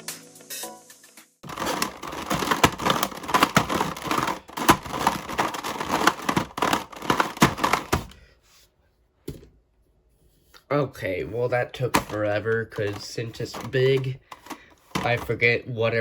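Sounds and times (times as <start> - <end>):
plastic puzzle cube layers clacking: 1.4 - 8.2, 11.8 - 15.4.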